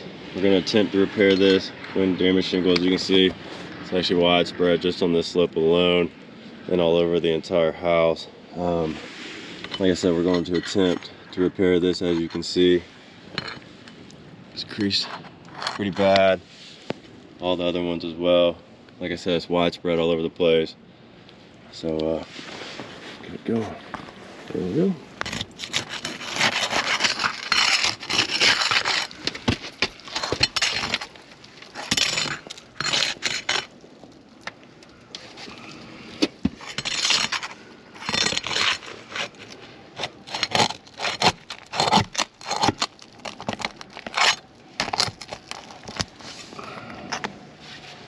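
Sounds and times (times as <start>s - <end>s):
shingles scraping and crackling: 25.1s - 47.4s.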